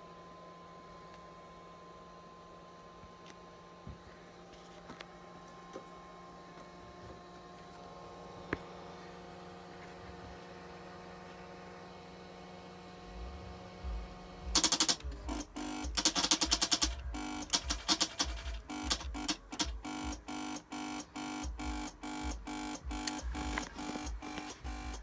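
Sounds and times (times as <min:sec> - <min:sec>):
faint electrical hum: 0:00.0 - 0:25.0
starter solenoid rapid clicking: 0:14.5 - 0:25.0.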